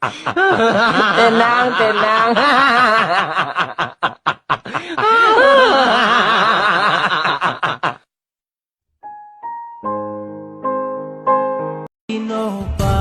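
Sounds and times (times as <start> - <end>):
piano melody and chords: 9.0 - 11.9.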